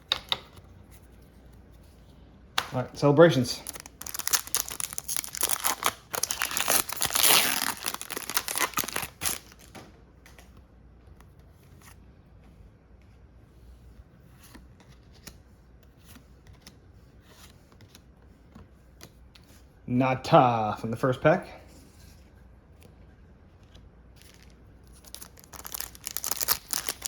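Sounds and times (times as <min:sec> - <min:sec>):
cards clicking and rustling: 0:02.6 - 0:10.6, 0:23.6 - 0:27.0
foil wrapper tearing and crinkling: 0:03.6 - 0:09.7, 0:24.2 - 0:27.0.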